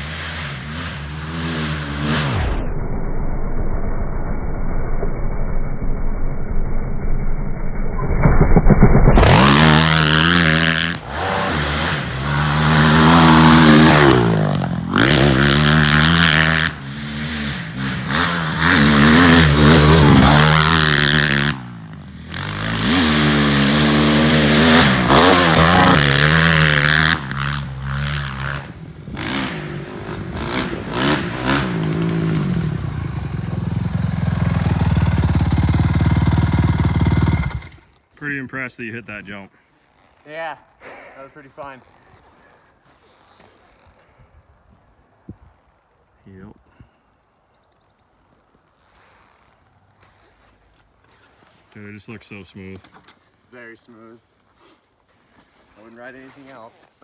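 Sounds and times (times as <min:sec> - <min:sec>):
motorcycle engine revving: 0:00.0 - 0:02.7, 0:07.9 - 0:38.0.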